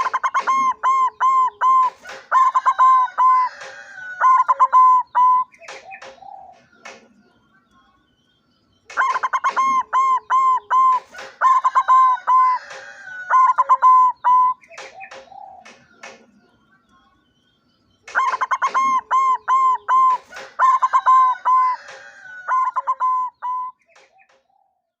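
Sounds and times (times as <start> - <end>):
dove cooing: 0.0 - 7.0, 8.9 - 16.3, 18.1 - 23.8.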